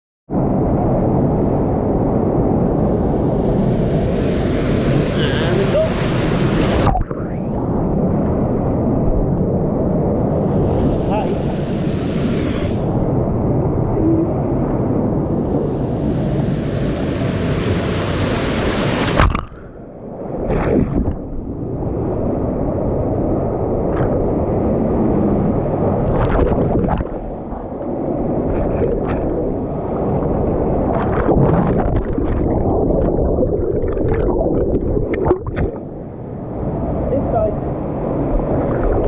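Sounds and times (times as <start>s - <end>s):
rushing water churning: 2.6s - 7.2s, 15.1s - 19.5s, 25.8s - 37.0s, 37.6s - 39.0s
bright water hiss: 2.9s - 6.8s.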